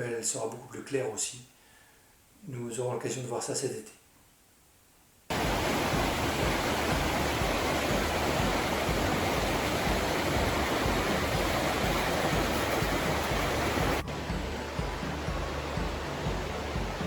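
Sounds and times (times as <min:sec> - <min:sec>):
river rushing over rapids: 0:05.3 - 0:17.0.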